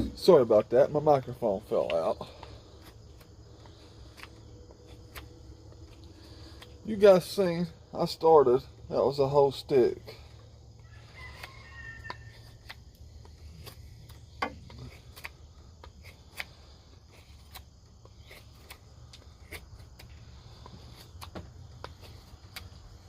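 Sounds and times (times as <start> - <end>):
knife cutting wooden stick: 2.8 - 6.7, 11.1 - 22.8.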